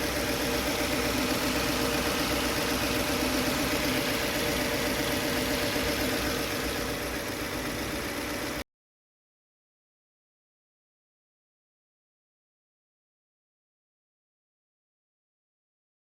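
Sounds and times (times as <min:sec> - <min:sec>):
car engine idling: 0:00.0 - 0:08.6.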